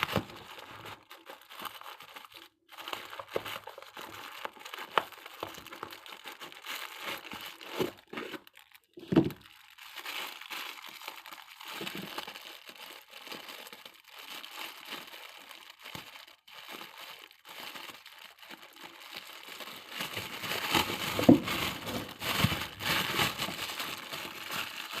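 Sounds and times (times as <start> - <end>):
plastic packaging crinkling: 0.0 - 25.0.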